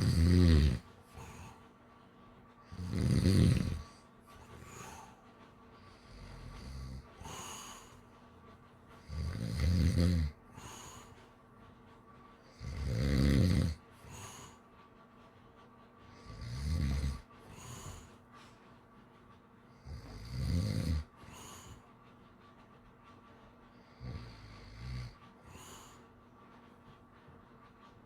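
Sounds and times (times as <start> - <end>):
person snoring: 0.0 - 0.8, 2.7 - 3.8, 9.1 - 10.4, 12.6 - 13.8
soft breathy breaths: 0.0 - 28.0.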